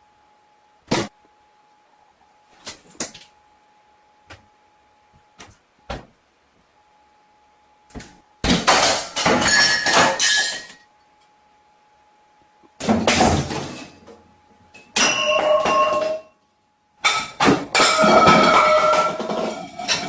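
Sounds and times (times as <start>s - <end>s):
clattering and knocking: 17.0s - 20.0s.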